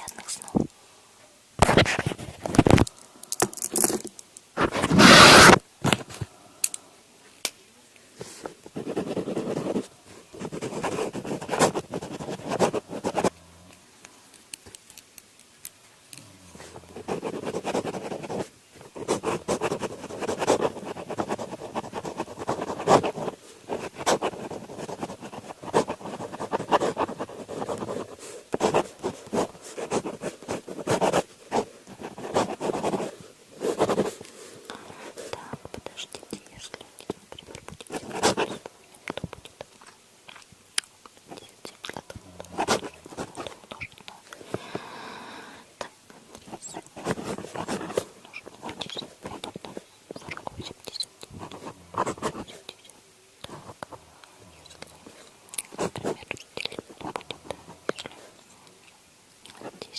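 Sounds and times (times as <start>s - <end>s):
soft scraping of paper: 1.6s - 2.9s, 4.6s - 6.3s, 8.2s - 13.4s, 16.6s - 38.7s, 42.4s - 44.6s, 46.1s - 54.0s, 55.0s - 58.4s
paper crinkling: 46.2s - 53.9s.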